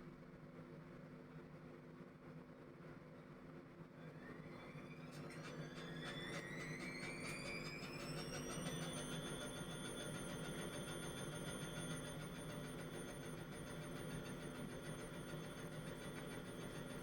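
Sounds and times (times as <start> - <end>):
washing machine motor whine: 4.0 - 17.0.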